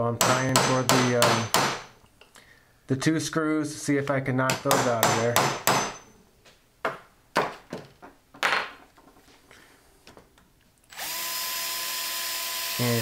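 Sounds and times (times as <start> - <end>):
hammer knocking metal punch: 0.2 - 1.9, 4.5 - 6.1
electric drill whining: 10.9 - 13.0.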